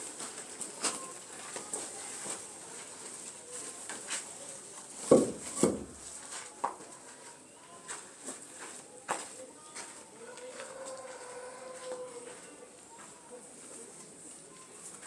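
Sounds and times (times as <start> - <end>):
loud knocks: 5.1 - 6.0.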